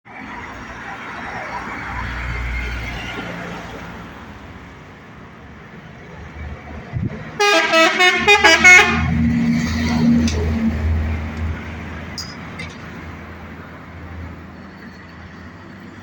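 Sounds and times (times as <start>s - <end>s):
truck diesel engine rumble: 3.9s - 16.0s
multi-note truck horn blast: 7.4s - 10.5s.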